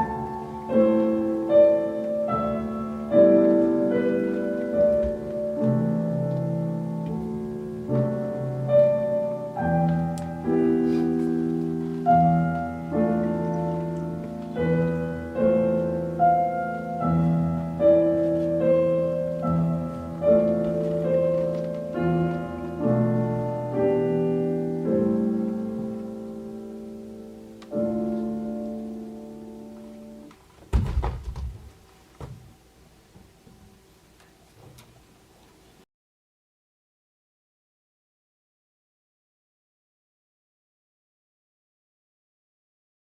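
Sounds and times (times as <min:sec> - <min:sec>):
slow piano music: 0:00.0 - 0:30.5.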